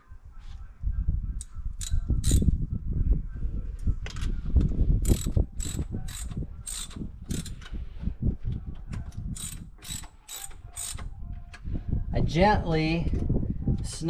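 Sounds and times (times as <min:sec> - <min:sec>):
ratchet wrench clicking: 0:01.8 - 0:02.5, 0:05.0 - 0:07.7, 0:09.4 - 0:11.1.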